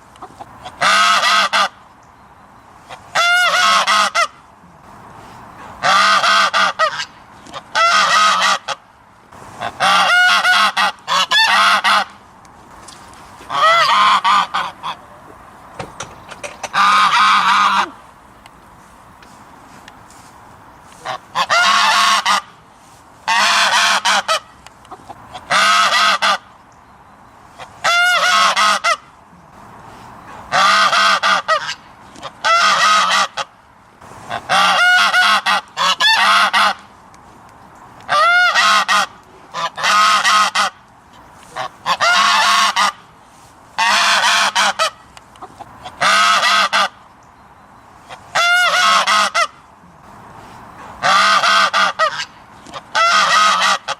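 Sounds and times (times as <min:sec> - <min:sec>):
goose honking: 0:00.2 - 0:01.8, 0:02.8 - 0:04.4, 0:05.8 - 0:08.8, 0:09.5 - 0:12.2, 0:13.4 - 0:15.3, 0:16.0 - 0:18.0, 0:20.9 - 0:22.6, 0:23.2 - 0:26.5, 0:27.6 - 0:29.1, 0:30.3 - 0:33.6, 0:34.2 - 0:36.9, 0:38.1 - 0:40.8, 0:41.4 - 0:43.1, 0:43.8 - 0:47.0, 0:48.0 - 0:49.6, 0:51.0 - 0:53.9.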